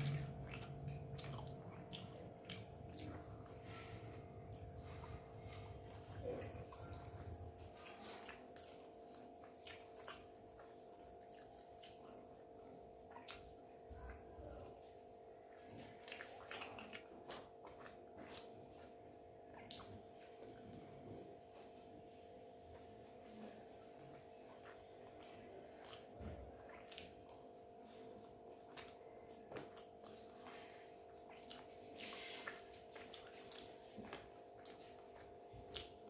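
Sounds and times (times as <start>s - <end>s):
soft wet chewing: 0.0s - 36.0s
mouth clicks and smacks: 13.0s - 13.8s.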